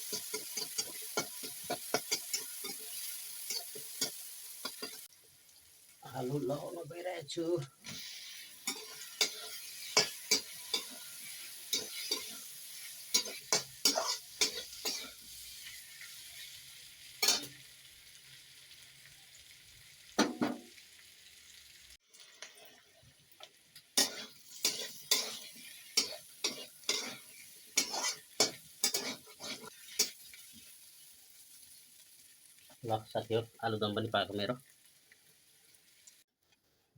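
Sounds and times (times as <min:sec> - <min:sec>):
potatoes sizzling in oil: 0:00.0 - 0:36.3
spatula scraping a pan: 0:07.9 - 0:16.6, 0:24.0 - 0:30.7.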